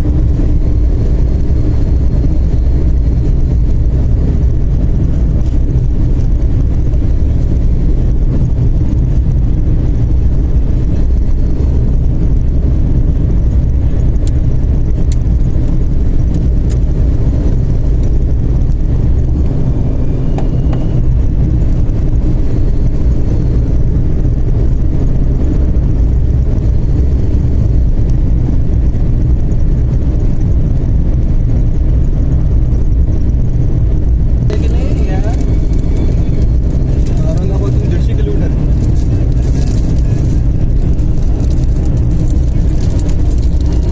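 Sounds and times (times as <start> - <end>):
car engine and road drone: 0.0 - 43.9
faint turbo whistle: 20.0 - 21.2.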